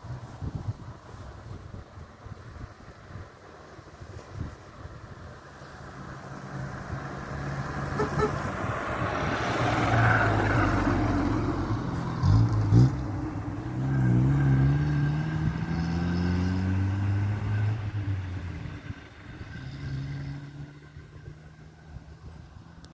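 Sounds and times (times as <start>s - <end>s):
cars driving past: 5.4s - 22.9s.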